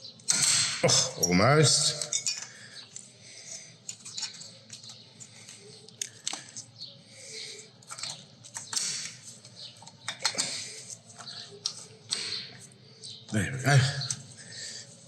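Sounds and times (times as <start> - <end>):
small metal clicks and scrapes: 1.9 - 6.8.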